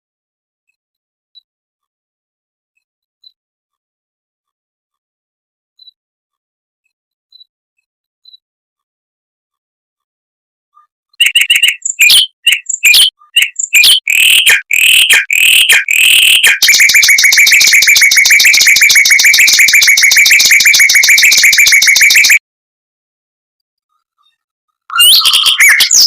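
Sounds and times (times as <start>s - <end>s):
mockingbird singing: 11.2s - 22.4s, 24.9s - 26.0s.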